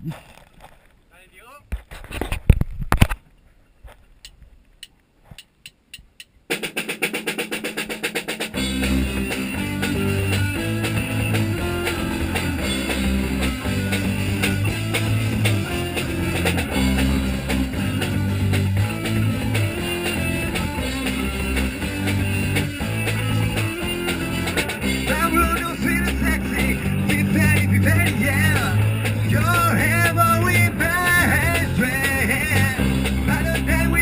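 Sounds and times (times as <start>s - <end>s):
drum kit: 5.4s - 34.0s
guitar strumming: 8.4s - 34.0s
low bass notes: 8.5s - 34.0s.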